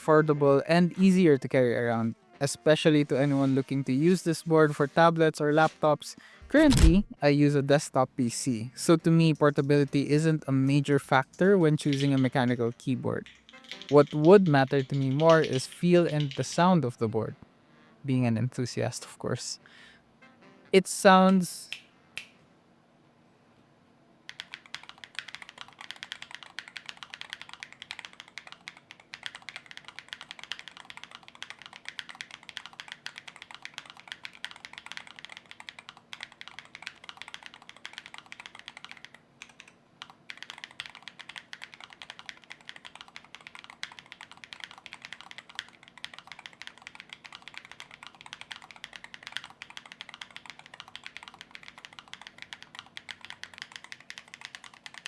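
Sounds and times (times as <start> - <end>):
mechanical keyboard typing: 6.5 - 7.1, 9.2 - 17.0, 24.3 - 55.0.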